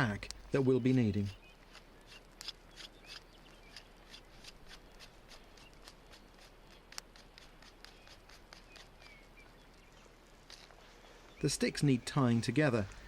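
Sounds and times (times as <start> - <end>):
faint rustling: 3.8 - 11.8.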